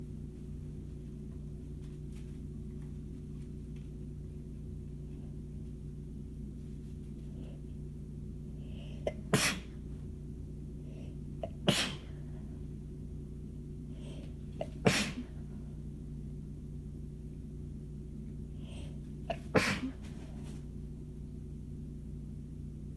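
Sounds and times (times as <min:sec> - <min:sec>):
person sneezing: 0:09.0 - 0:09.8, 0:11.4 - 0:12.2, 0:14.6 - 0:15.4, 0:19.3 - 0:20.3.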